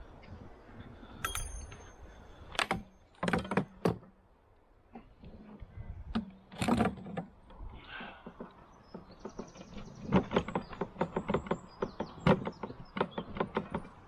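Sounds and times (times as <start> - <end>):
sharp clunks and knocks: 2.5 - 4.2, 8.2 - 14.0.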